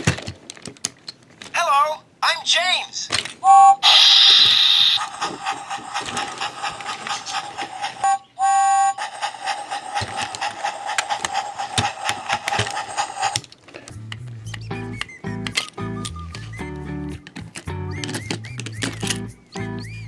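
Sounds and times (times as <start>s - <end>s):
toy train whistle tone: 3.4s - 10.5s
steam hiss: 3.5s - 13.4s
rhythmic chuffing: 3.5s - 13.5s.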